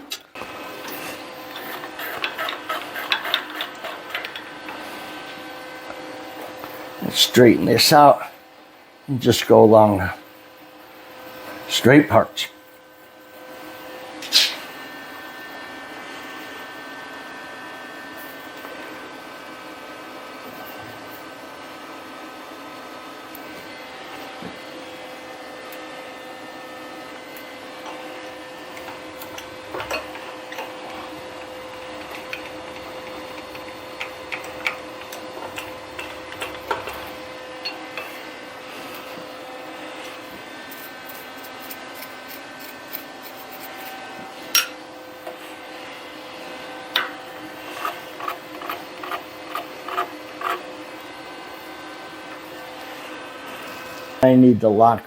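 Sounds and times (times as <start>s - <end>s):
milling machine spindle humming: 0.0s - 11.9s, 12.9s - 54.2s
end mill cutting: 0.4s - 7.3s, 27.1s - 44.0s, 46.8s - 50.9s.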